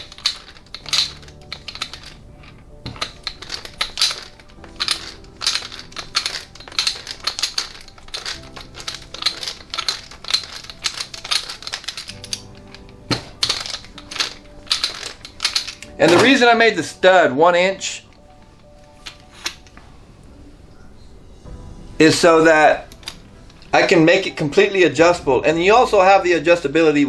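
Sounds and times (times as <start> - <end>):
metal tools clicking and tapping: 0.0 - 16.8, 17.9 - 19.9, 22.5 - 24.8.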